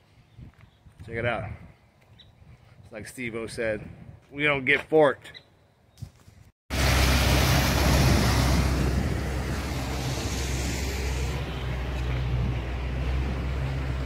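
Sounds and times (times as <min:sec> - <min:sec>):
wind noise on microphone: 0:00.0 - 0:04.3, 0:06.0 - 0:14.0
outboard motor running: 0:06.7 - 0:14.0.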